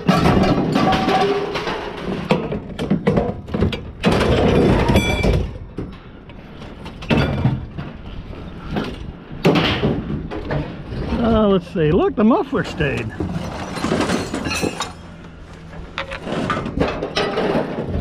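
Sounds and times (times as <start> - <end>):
scrap metal crashing: 0.0 - 5.8, 12.8 - 15.2, 16.1 - 18.0.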